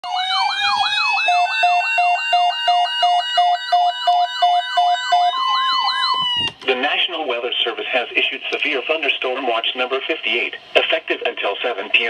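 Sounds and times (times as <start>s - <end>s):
pulsing siren tone: 0.0s - 6.5s
high wavering siren wail: 0.0s - 6.6s
siren yelp: 0.0s - 6.6s
steady siren tone: 0.0s - 6.6s.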